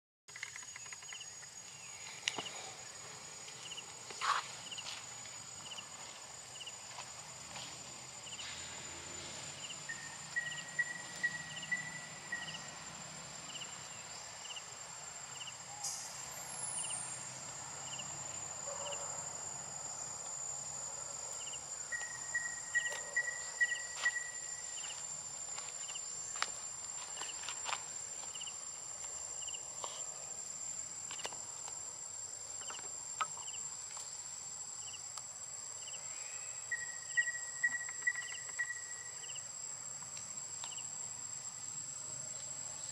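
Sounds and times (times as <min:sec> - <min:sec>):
insects chirping chorus: 0:00.3 - 0:42.9
short trilling calls: 0:09.9 - 0:12.6.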